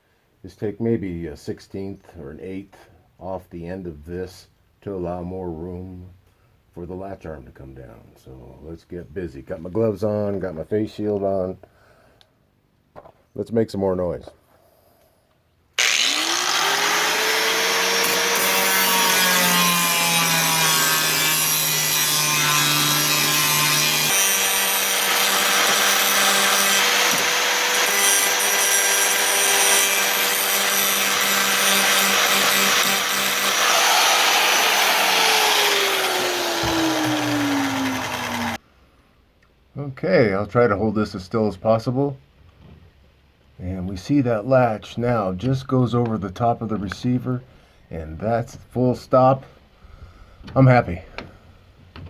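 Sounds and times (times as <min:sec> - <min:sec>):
power grinder grinding metal: 0:15.8 - 0:38.6.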